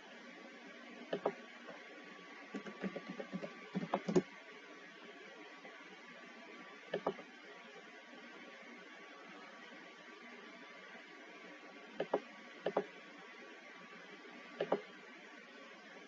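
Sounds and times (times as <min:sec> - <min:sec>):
keyboard and mouse clicks: 0:01.1 - 0:01.4, 0:02.6 - 0:04.2, 0:07.0 - 0:07.2, 0:12.0 - 0:12.9, 0:14.6 - 0:14.8.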